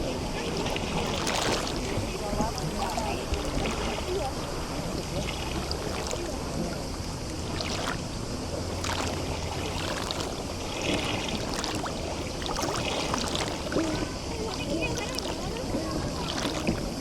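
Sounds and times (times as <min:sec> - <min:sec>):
small waves lapping and splashing: 0:00.0 - 0:17.0.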